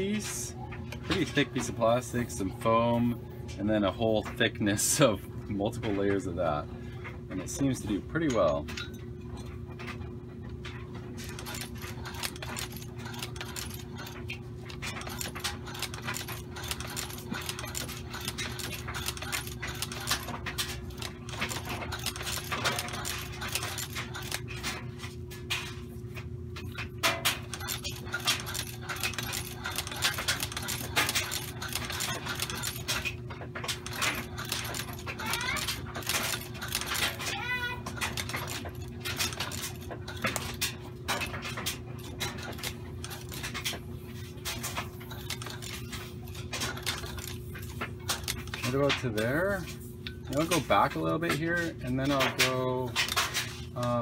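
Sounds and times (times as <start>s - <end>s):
sewing machine clattering: 9.9s - 25.0s, 26.6s - 54.0s.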